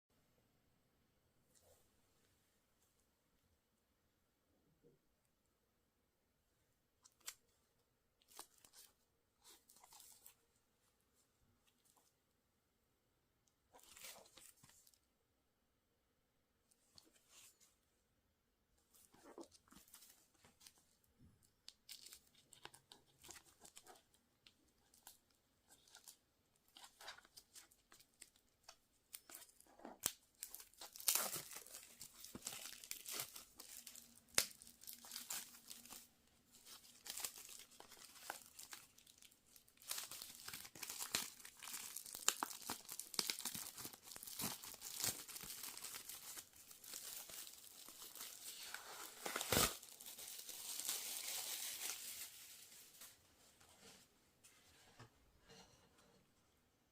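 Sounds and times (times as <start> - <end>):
plastic wrapping tearing and crinkling: 29.1 - 52.8.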